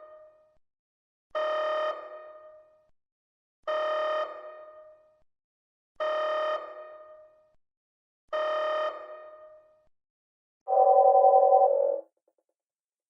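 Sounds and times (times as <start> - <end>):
bright electronic tone: 10.7 - 12.0
loud electronic tone: 10.7 - 12.0.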